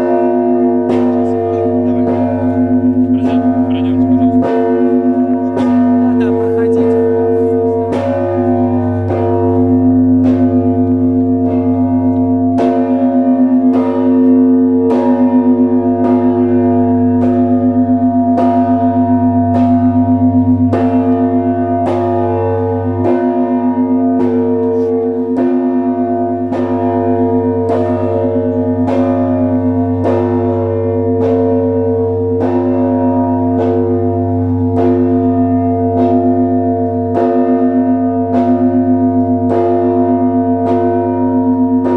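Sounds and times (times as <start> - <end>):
church bells ringing: 0.0 - 41.9
deep hum of large bells: 0.0 - 41.9.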